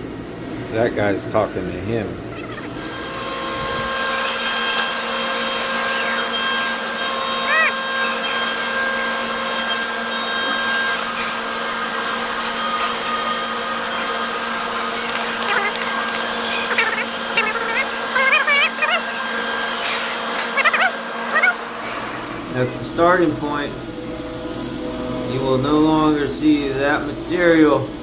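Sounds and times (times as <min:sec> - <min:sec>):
high wavering chirps: 0:02.3 - 0:03.0, 0:13.9 - 0:21.9
milling machine whirring: 0:02.3 - 0:28.0.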